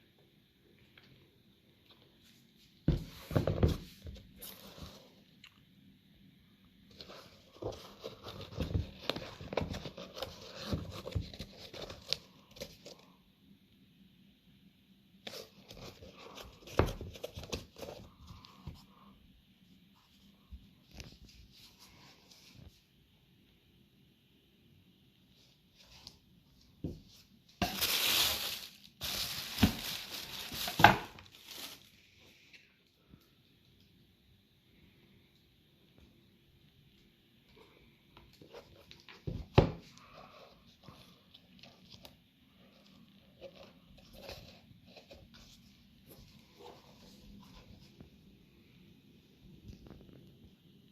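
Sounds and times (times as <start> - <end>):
paper packaging rustling: 6.9 - 13.0, 27.6 - 32.0.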